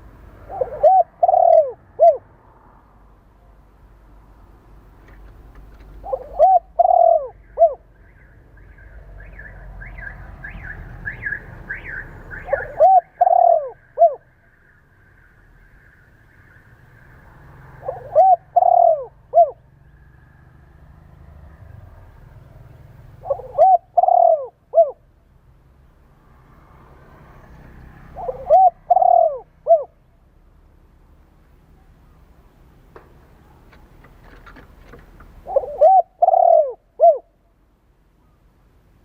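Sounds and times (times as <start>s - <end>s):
dove cooing: 0.0s - 2.3s, 5.6s - 7.9s, 12.3s - 14.3s, 17.6s - 19.7s, 23.0s - 25.0s, 28.0s - 30.0s, 33.4s - 37.4s
bird calling higher notes: 0.4s - 2.3s, 6.0s - 15.4s, 17.8s - 19.9s, 23.2s - 25.1s, 28.2s - 30.0s, 35.4s - 37.4s.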